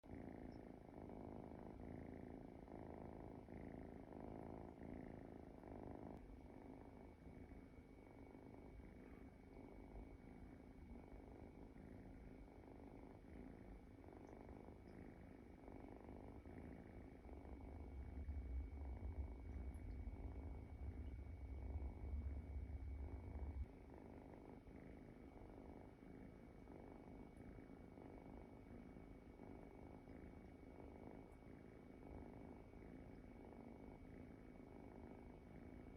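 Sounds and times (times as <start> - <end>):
kitten snoring: 0.1 - 35.9
low rumble: 16.3 - 23.9.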